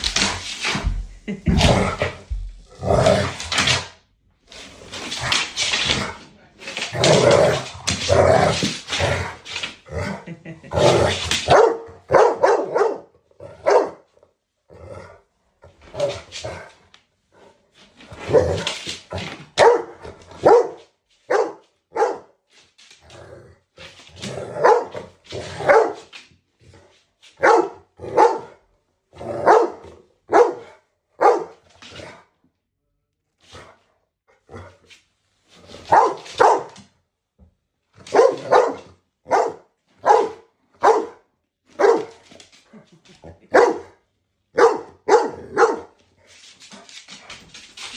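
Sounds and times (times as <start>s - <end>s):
dog barking: 11.5s - 14.0s, 19.6s - 22.3s, 24.6s - 25.0s, 25.6s - 26.1s, 27.4s - 28.6s, 29.4s - 31.6s, 35.9s - 36.8s, 38.1s - 41.2s, 41.8s - 42.2s, 43.5s - 46.0s.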